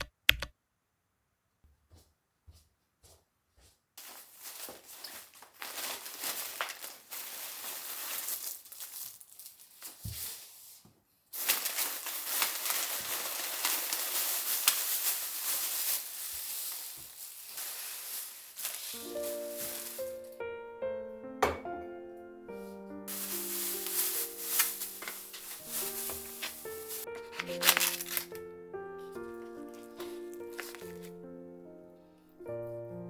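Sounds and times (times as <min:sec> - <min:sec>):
packaging crinkling and rustling: 0:04.0 - 0:20.4, 0:23.1 - 0:28.4, 0:29.0 - 0:31.2
music: 0:18.6 - 0:33.0.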